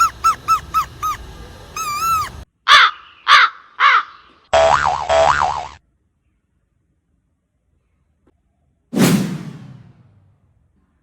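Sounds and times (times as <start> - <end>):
grass whistle squeaky notes: 1.8 - 2.4
crow cawing: 2.7 - 4.3
warbling sound swooping in pitch: 9.0 - 10.1.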